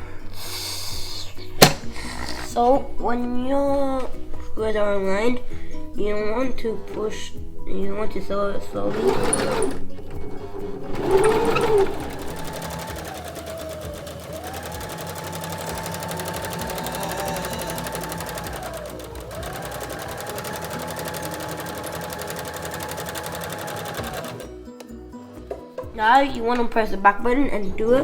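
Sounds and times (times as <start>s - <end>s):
sewing machine stitching: 8.4s - 24.5s.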